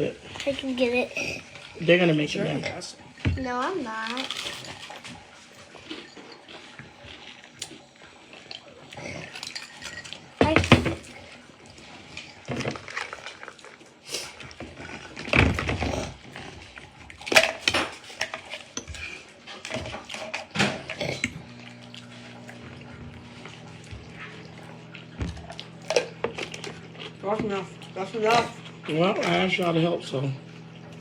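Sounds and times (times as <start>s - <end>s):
dishes and cutlery clattering: 4.0s - 7.0s, 8.4s - 11.2s, 17.2s - 21.4s, 28.2s - 29.6s.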